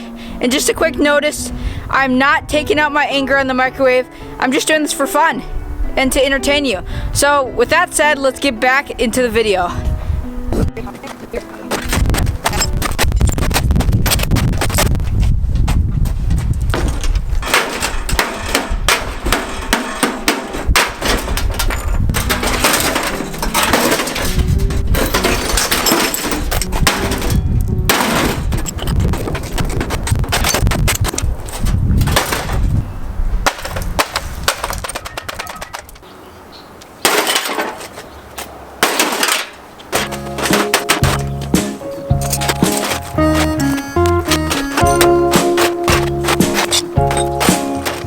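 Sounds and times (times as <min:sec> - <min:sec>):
music with steady notes: 0:00.0 - 0:12.8, 0:40.1 - 0:48.0
heavy blows on metal casing: 0:11.6 - 0:32.8, 0:38.8 - 0:48.0
hand tool striking metal: 0:16.7 - 0:29.2, 0:38.8 - 0:48.0
music with drum beat: 0:41.0 - 0:48.0.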